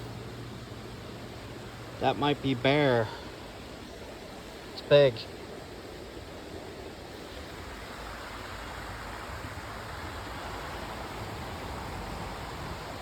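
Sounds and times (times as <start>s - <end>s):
river water flowing over rocks: 0.0s - 13.0s.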